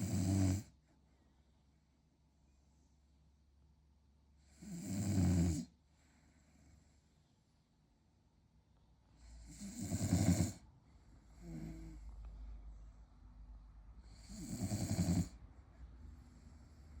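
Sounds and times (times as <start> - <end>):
dog snoring: 0.0 - 0.8, 4.4 - 5.7, 9.2 - 10.6, 11.3 - 12.0, 14.0 - 15.4.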